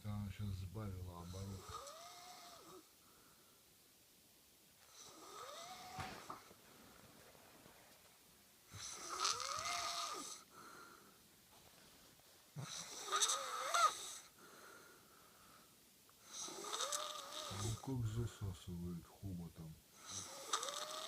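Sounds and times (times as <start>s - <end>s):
soft breathing: 1.2s - 3.8s, 4.8s - 12.9s, 14.1s - 16.3s
woman snoring: 1.6s - 2.8s, 4.9s - 6.3s, 8.7s - 10.5s, 12.6s - 14.3s, 16.3s - 17.8s, 20.0s - 21.0s.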